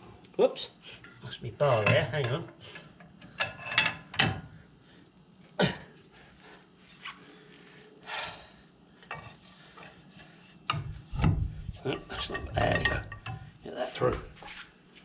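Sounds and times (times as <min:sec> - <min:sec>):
tools knocking and clunking: 0:01.8 - 0:04.6, 0:10.6 - 0:14.3.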